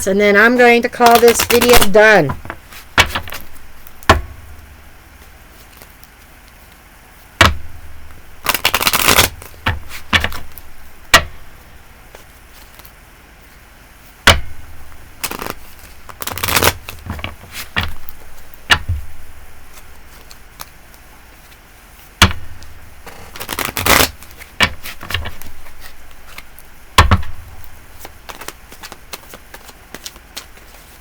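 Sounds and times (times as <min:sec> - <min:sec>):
cards riffling: 0:01.0 - 0:03.9, 0:08.4 - 0:10.7, 0:15.1 - 0:31.0
quiet card shuffling: 0:12.1 - 0:13.6, 0:15.2 - 0:21.7, 0:22.5 - 0:31.0
card slaps: 0:15.2 - 0:19.0, 0:23.4 - 0:30.8.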